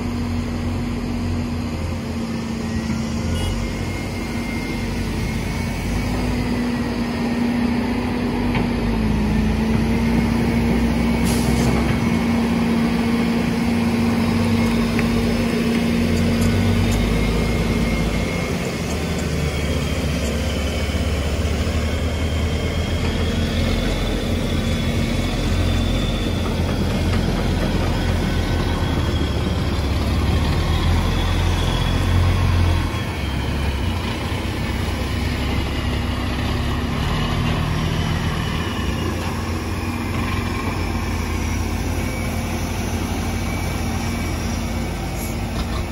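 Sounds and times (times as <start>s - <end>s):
heavy diesel engines running: 0.0s - 45.9s
faint high whine: 0.2s - 7.2s.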